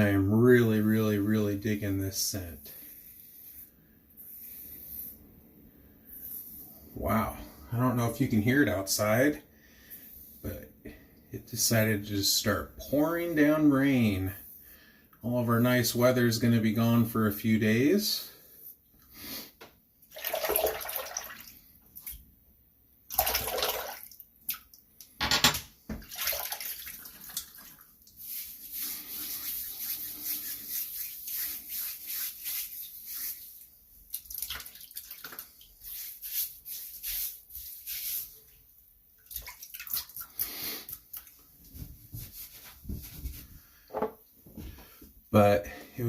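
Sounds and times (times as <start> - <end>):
razor strokes through lather: 2.7 - 5.2, 28.1 - 33.8
water splashing: 26.0 - 27.8.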